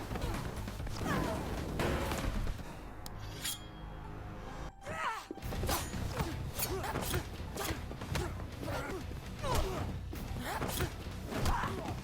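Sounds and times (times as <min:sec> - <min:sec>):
action film score: 0:00.0 - 0:12.0.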